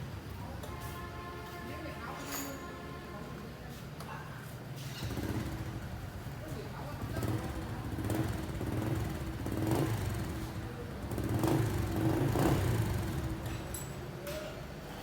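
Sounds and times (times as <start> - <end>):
motorcycle engine running: 5.0 - 13.7.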